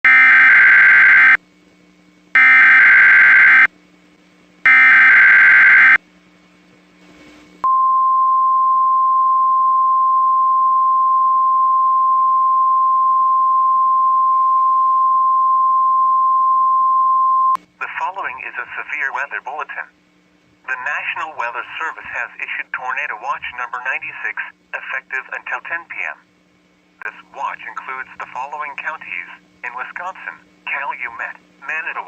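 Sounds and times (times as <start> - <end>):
data burst tones: 2.4 - 3.7, 4.7 - 6.0
steady alert tone: 2.4 - 3.7, 4.7 - 6.0.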